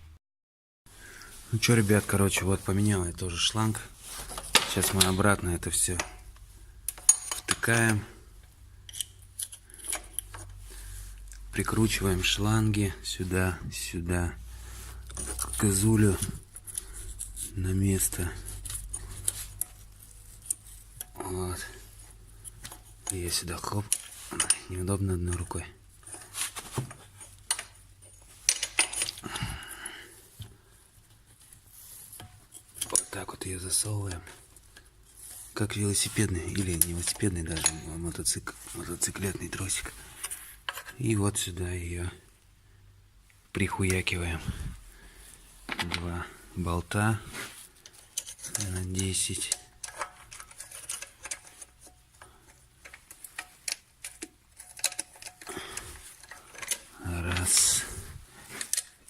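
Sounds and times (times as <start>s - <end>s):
rustling scrape: 1.2s - 6.6s, 9.6s - 29.2s, 30.1s - 41.5s, 44.2s - 59.0s
wrench clicking on bolts: 8.8s - 10.4s, 48.1s - 51.9s, 52.5s - 55.5s, 56.1s - 57.7s.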